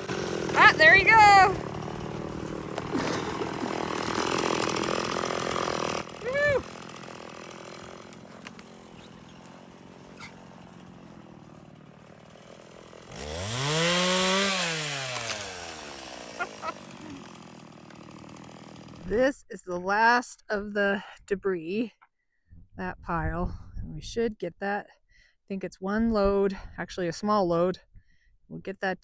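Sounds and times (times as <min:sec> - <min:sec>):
chainsaw revving: 0:00.0 - 0:19.2.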